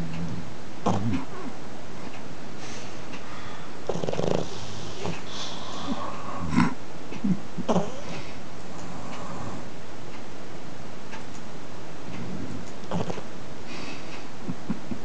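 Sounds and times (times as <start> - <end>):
dog snoring: 0.0 - 1.6, 3.8 - 6.8, 7.6 - 9.7, 12.2 - 13.3
snuffling breaths: 2.6 - 9.8, 12.1 - 14.6.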